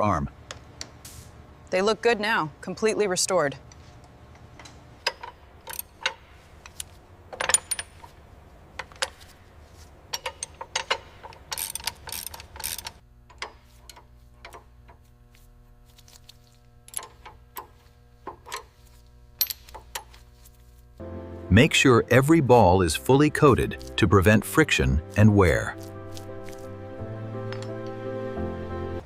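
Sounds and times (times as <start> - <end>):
metal tools clinking: 5.0 - 8.2, 10.1 - 14.6, 19.4 - 20.2.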